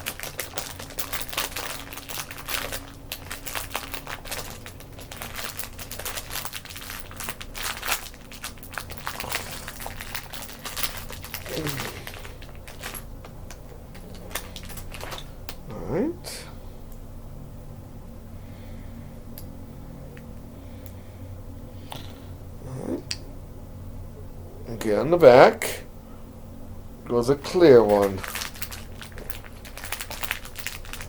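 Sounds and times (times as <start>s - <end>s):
plastic packaging crinkling: 0.0s - 15.4s, 27.1s - 31.0s.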